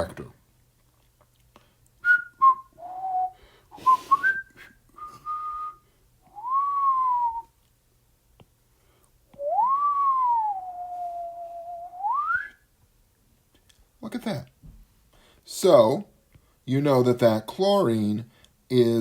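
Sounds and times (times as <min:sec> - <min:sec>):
person whistling a tune: 0:02.0 - 0:07.5, 0:09.4 - 0:12.6.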